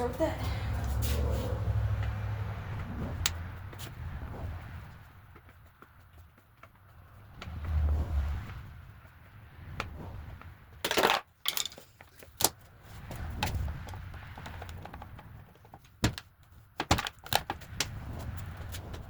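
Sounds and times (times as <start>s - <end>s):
clattering rattle: 10.8s - 11.9s
metal tools clinking: 10.9s - 11.9s.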